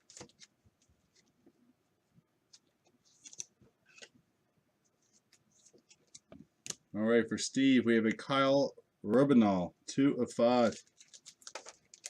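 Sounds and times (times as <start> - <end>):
trading cards clicking and rustling: 10.6 - 12.0.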